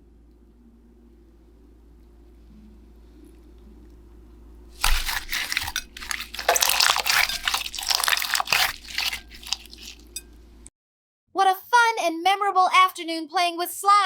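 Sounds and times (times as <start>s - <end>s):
slime squelching and crackling: 4.8s - 10.2s.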